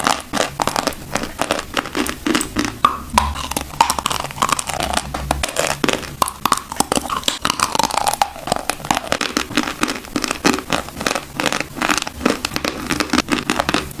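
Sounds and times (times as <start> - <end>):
chalk crunching between teeth: 0.0 - 14.0.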